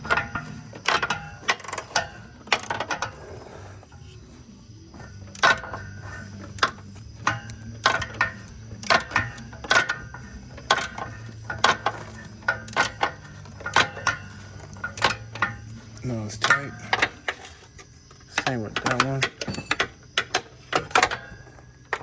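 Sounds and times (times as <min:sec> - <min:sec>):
socket ratchet clicking: 0:05.0 - 0:22.0.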